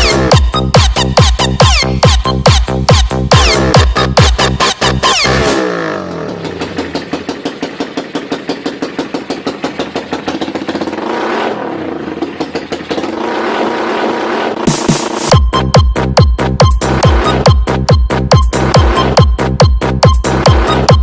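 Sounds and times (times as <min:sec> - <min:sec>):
dance music: 0:00.0 - 0:06.6, 0:14.5 - 0:21.0
motorcycle engine revving: 0:00.0 - 0:21.0.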